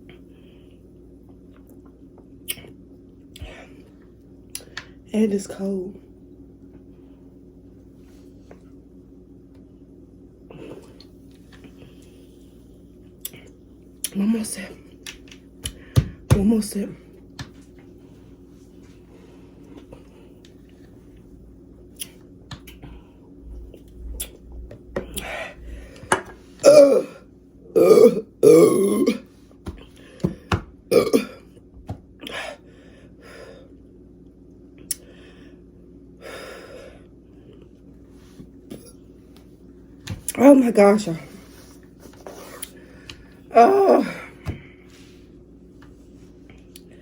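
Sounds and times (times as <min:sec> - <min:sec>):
woman burping: 0:26.6 - 0:27.2, 0:27.8 - 0:29.2, 0:30.9 - 0:31.4.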